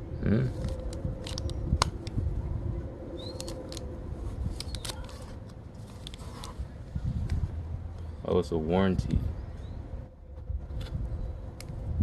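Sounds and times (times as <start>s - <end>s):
low outdoor hum and rumble: 0.0s - 12.0s
packaging clicking and crinkling: 0.6s - 2.2s, 4.5s - 6.6s.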